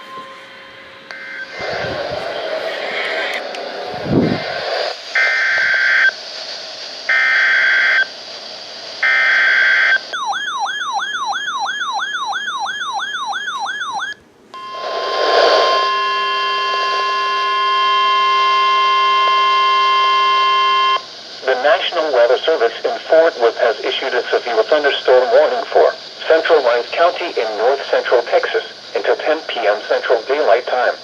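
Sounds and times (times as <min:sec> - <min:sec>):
piercing warning alarm tone: 0:09.0 - 0:21.1.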